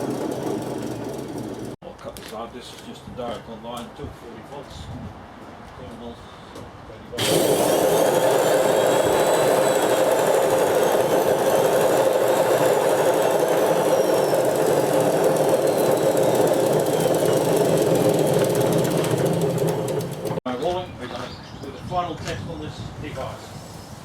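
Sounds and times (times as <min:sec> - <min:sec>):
washing machine running: 0:00.0 - 0:01.8, 0:07.2 - 0:20.4
motor whine: 0:07.2 - 0:20.4.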